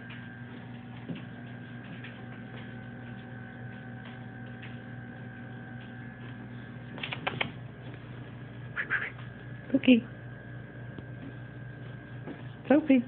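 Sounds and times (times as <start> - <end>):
steady electrical hum: 0.0 - 13.0.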